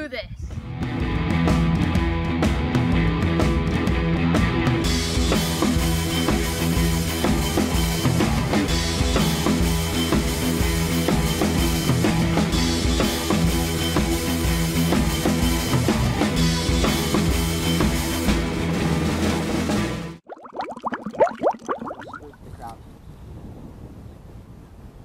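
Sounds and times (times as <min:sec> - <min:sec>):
rock music with drums and bass: 0:00.6 - 0:20.2.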